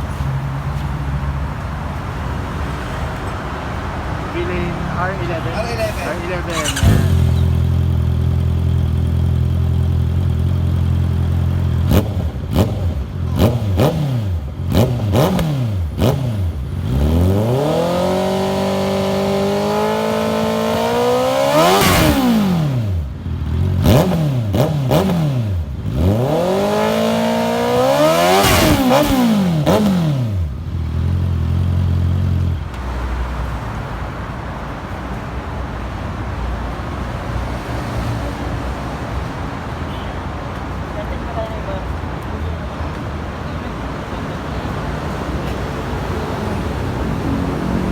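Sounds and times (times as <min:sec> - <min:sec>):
motorcycle engine revving: 0:05.5 - 0:32.8, 0:46.0 - 0:47.9
exhaust pops: 0:05.8 - 0:09.9.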